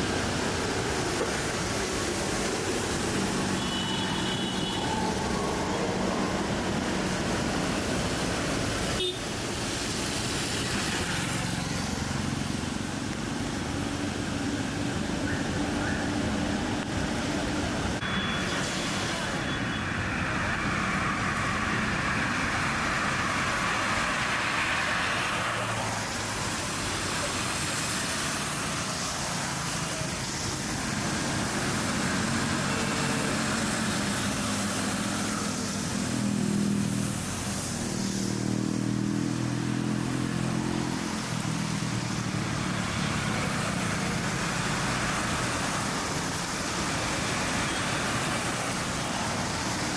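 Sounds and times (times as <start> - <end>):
vehicles passing: 0.0 - 49.9.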